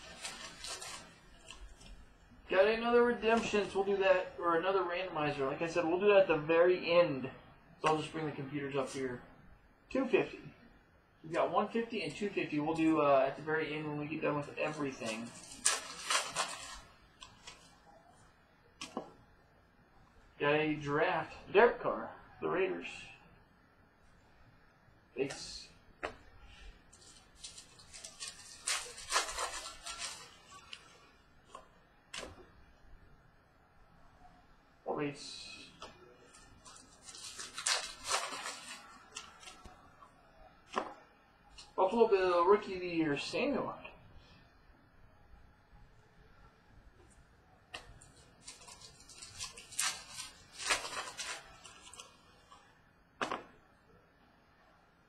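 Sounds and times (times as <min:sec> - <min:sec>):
cards rustling and scraping: 0:00.0 - 0:02.1, 0:14.4 - 0:17.8, 0:26.5 - 0:32.4, 0:35.7 - 0:39.8, 0:47.7 - 0:52.6.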